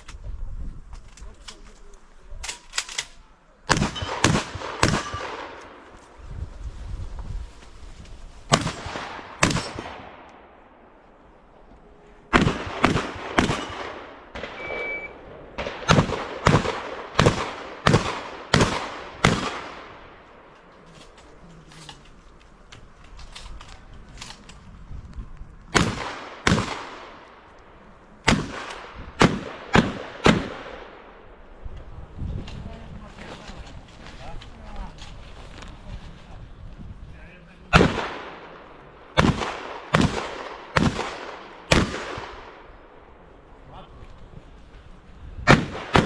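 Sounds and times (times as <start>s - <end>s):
shotgun firing: 3.7s - 5.8s, 8.5s - 10.5s, 12.3s - 20.1s, 25.7s - 27.2s, 28.2s - 31.1s, 37.7s - 42.6s, 45.5s - 46.0s.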